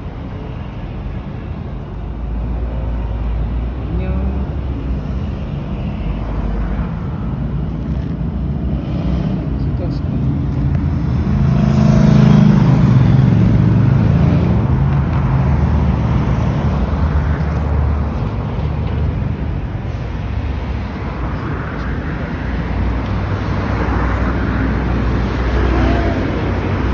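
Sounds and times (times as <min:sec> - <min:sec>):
low traffic rumble: 0:00.0 - 0:26.9
vehicle engine running close by: 0:06.0 - 0:26.9.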